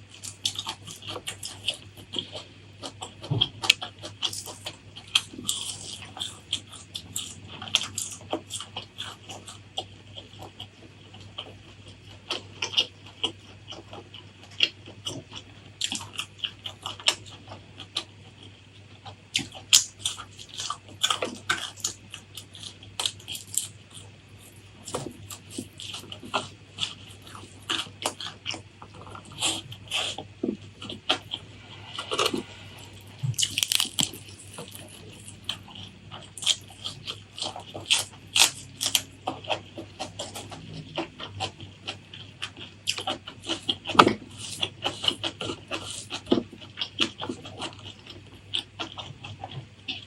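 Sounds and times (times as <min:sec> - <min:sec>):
person chewing crisp food: 0:00.0 - 0:50.0
wet mouth sounds: 0:29.0 - 0:39.1.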